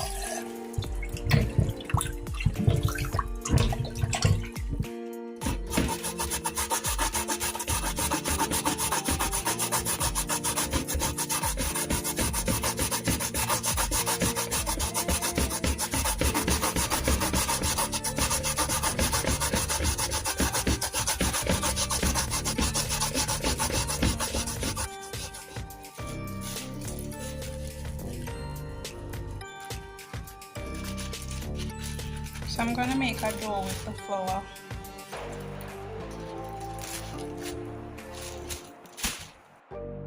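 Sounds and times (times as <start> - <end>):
grating on a metal grater: 5.4 - 25.6, 30.6 - 34.0.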